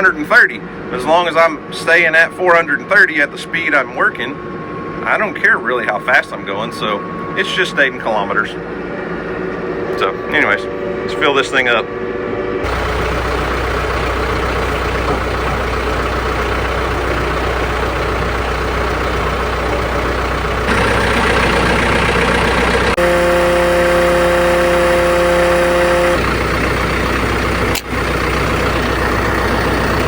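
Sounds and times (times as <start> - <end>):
steady whine: 0.0 - 30.0
tractor diesel engine idling: 7.4 - 30.0.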